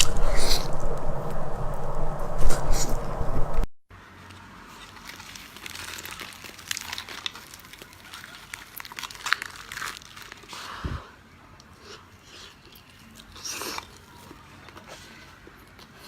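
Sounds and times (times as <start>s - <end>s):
crisp crunching while eating: 4.4s - 16.0s.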